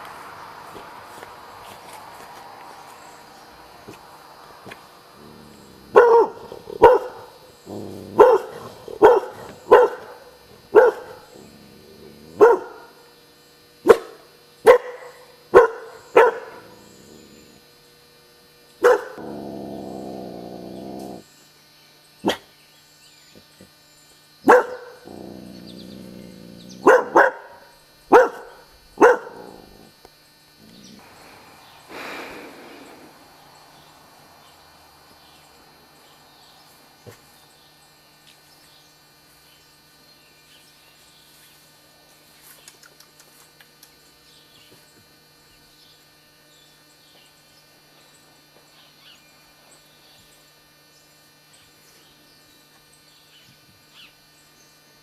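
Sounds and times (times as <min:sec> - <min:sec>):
dog barking: 0:05.8 - 0:07.4, 0:08.0 - 0:11.5, 0:12.4 - 0:13.0, 0:13.8 - 0:16.8, 0:18.8 - 0:19.3, 0:22.2 - 0:22.5, 0:24.5 - 0:25.2, 0:26.8 - 0:29.8.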